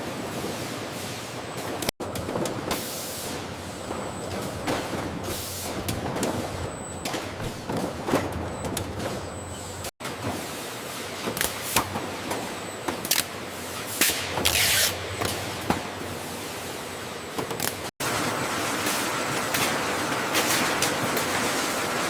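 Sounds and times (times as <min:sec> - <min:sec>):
machinery running: 0:02.0 - 0:09.9.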